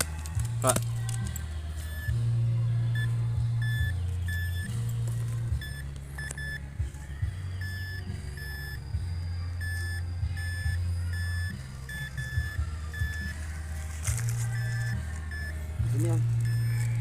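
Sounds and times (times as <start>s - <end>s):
steady low hum: 0.0s - 17.0s
metal detector beeping: 3.0s - 4.9s, 5.5s - 6.6s, 7.6s - 13.4s, 14.1s - 17.0s.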